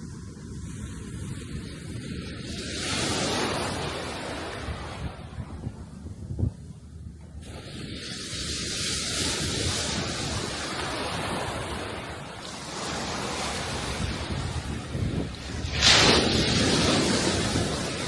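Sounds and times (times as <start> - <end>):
sea waves washing ashore: 0.0 - 18.0
wind gusting on microphone: 0.0 - 18.0.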